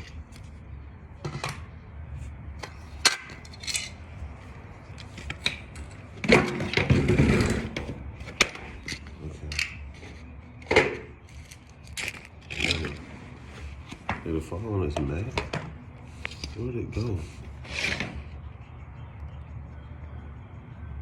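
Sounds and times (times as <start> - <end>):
rustling scrape: 11.2 - 14.1, 16.0 - 18.4.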